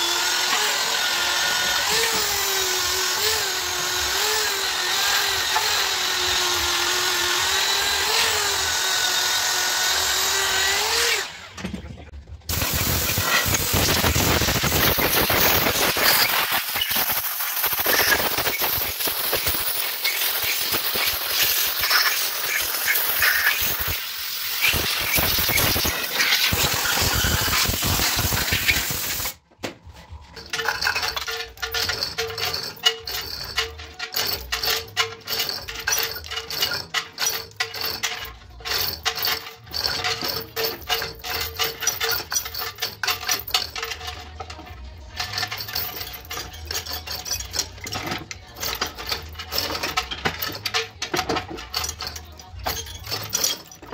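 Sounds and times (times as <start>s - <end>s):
metallic clinks and knocks: 11.6s - 53.9s.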